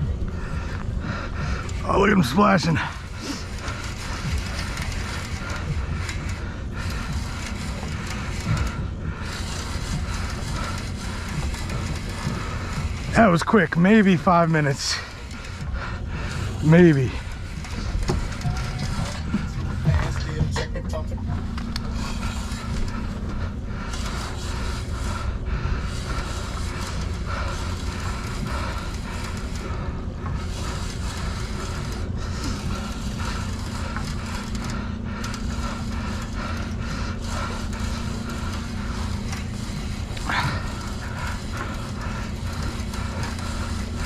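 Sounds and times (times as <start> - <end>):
gear clicks and scrapes: 0.0 - 44.0.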